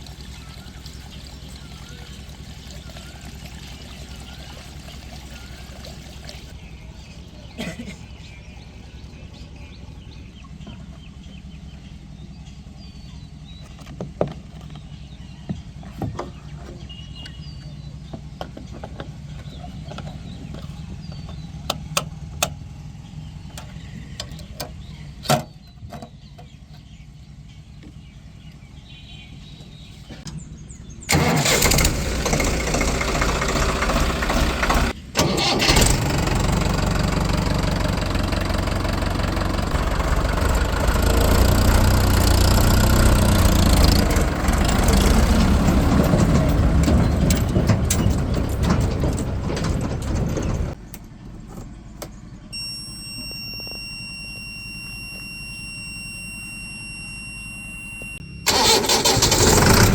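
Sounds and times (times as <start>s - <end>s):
engine idling: 0.0s - 52.5s, 57.7s - 59.9s
loud engine noise: 29.3s - 51.0s, 58.3s - 59.9s
clicks and knocks: 44.1s - 50.8s.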